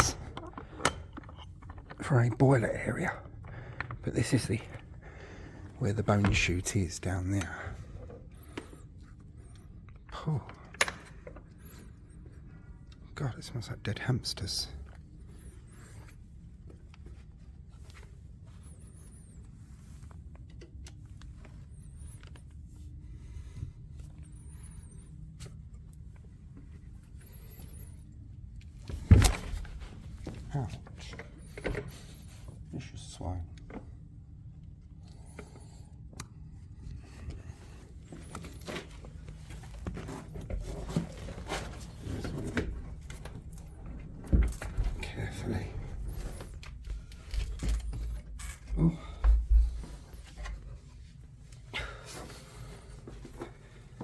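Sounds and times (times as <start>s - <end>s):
footsteps and handling rustles: 0.0s - 54.0s
steady low hum: 0.0s - 54.0s.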